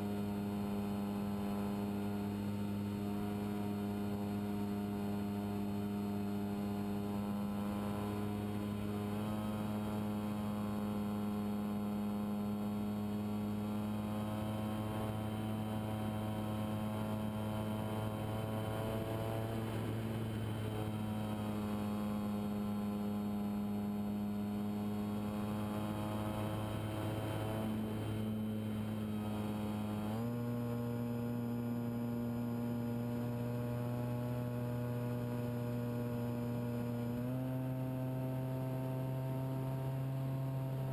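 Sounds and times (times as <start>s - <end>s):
model plane motor buzzing: 0.0s - 40.9s.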